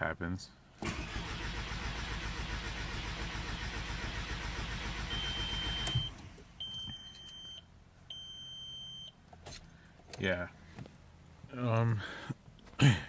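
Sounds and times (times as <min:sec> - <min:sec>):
car engine cranking: 0:00.8 - 0:06.6.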